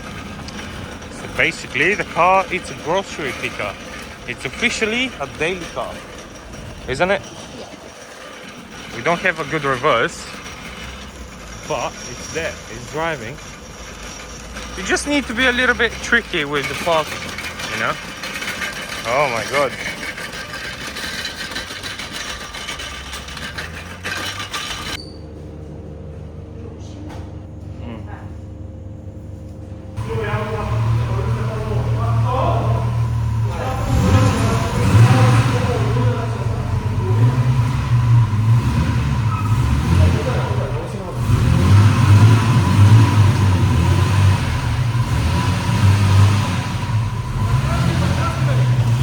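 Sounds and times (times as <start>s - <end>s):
car driving rush with rattles: 0.0s - 25.0s, 30.0s - 49.0s
steady low hum: 25.0s - 39.4s.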